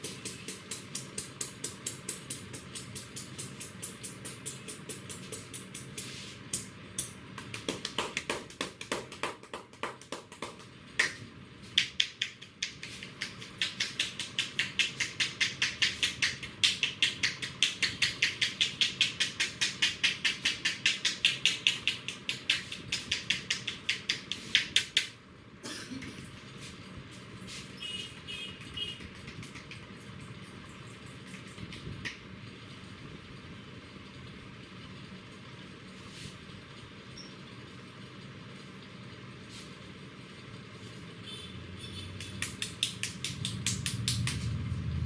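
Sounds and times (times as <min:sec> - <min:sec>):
hands slapping on head: 0:07.4 - 0:25.1, 0:28.6 - 0:29.9, 0:42.2 - 0:44.5.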